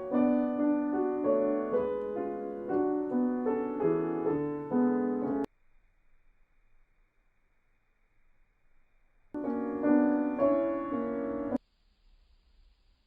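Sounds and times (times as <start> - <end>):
piano playing held chords: 0.0 - 5.5, 9.4 - 11.6
faint hiss: 0.0 - 13.0.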